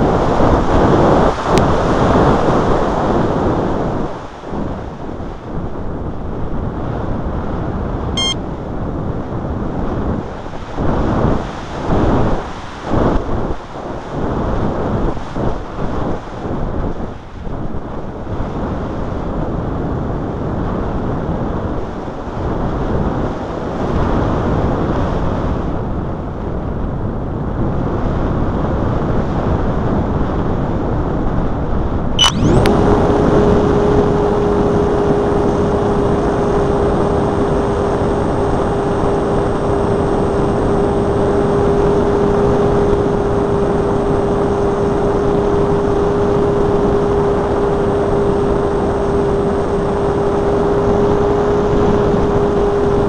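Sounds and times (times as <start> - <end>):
rushing wind noise: 0.0 - 53.0
electric motor humming and whining: 32.2 - 53.0.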